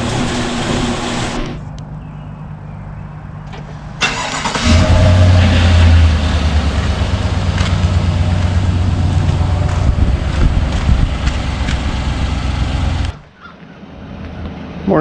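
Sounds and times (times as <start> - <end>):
vehicle engine starting and revving: 4.0 - 13.2.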